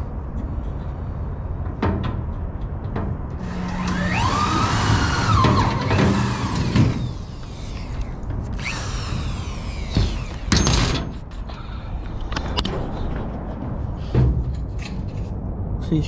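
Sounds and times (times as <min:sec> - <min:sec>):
power drill whining: 0:03.4 - 0:10.7.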